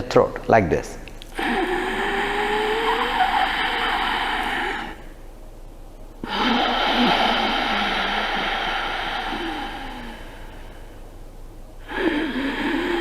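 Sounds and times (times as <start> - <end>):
man rasping breathing: 1.3 - 5.2, 6.2 - 11.1, 11.8 - 13.0.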